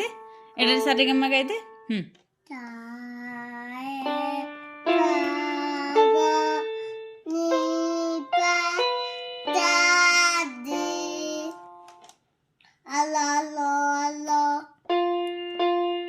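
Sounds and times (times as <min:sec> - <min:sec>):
toy keyboard melody: 0:03.7 - 0:12.1.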